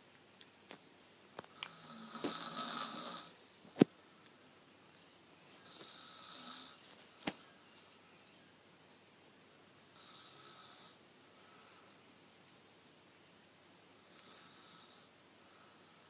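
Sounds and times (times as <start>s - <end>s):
man snoring: 1.6s - 3.4s, 5.7s - 6.8s, 10.0s - 11.9s, 14.1s - 16.0s.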